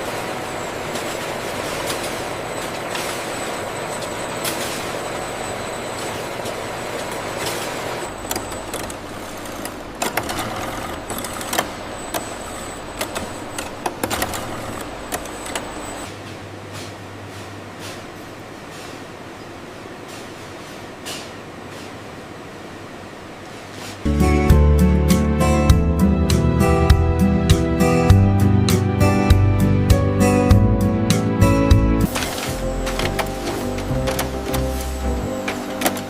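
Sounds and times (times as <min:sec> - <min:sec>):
factory machinery with high whine: 0:00.0 - 0:24.0, 0:32.0 - 0:36.0.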